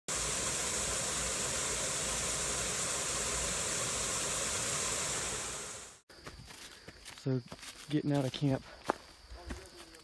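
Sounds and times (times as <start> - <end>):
steady high hiss: 0.1 - 6.0.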